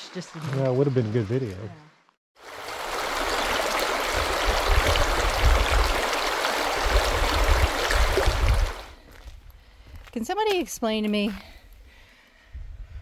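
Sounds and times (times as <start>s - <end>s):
rushing creek water: 2.4s - 9.0s.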